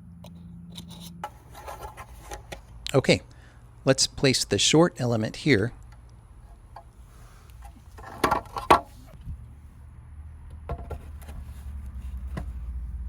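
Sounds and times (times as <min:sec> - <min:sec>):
plastic parts knocking and clicking: 0:08.0 - 0:08.9.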